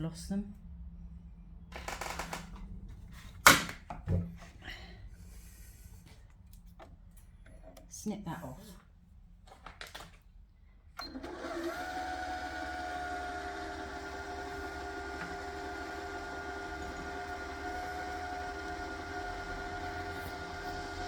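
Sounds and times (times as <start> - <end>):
sewing machine motor whine: 11.0 - 21.0.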